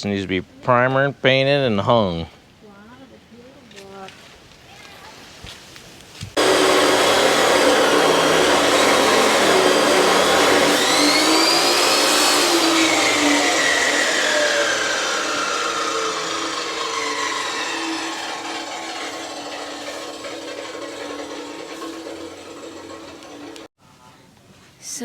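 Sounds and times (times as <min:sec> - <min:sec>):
power cutter grinding steel: 0:06.4 - 0:23.7.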